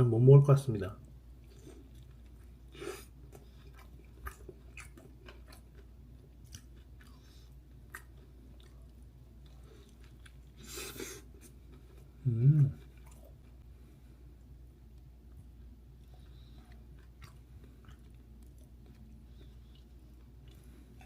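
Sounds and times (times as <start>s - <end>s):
person chewing: 1.4s - 13.6s, 14.9s - 21.0s.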